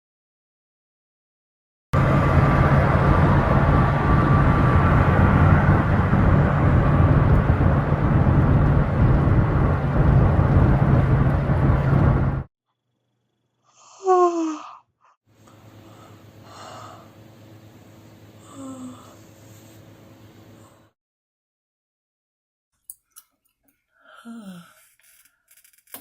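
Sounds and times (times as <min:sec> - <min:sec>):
mechanical drone with low hum: 0:02.0 - 0:12.5.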